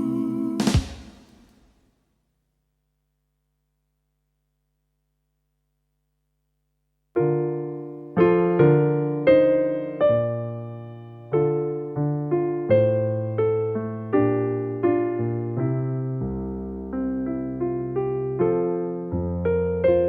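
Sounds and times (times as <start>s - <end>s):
piano chords: 7.2s - 20.0s.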